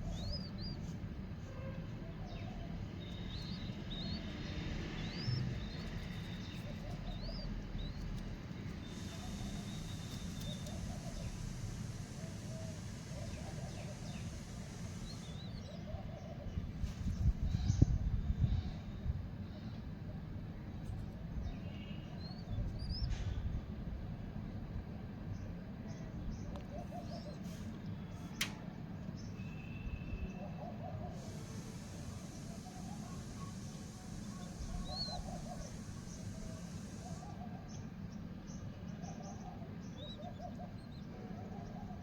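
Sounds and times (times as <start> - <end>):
faint bird calls: 8.8 - 16.7, 29.4 - 42.0
sharp click: 28.4 - 28.6.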